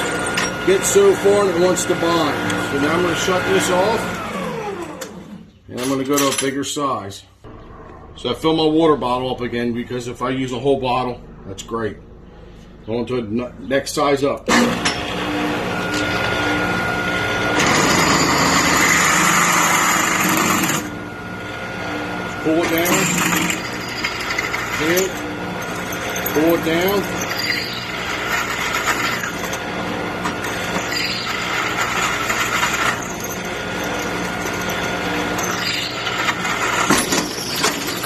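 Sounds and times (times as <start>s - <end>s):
drill bit grinding into steel: 0.0s - 4.3s, 14.5s - 38.0s
drill press motor hum: 0.0s - 5.5s, 14.5s - 38.0s.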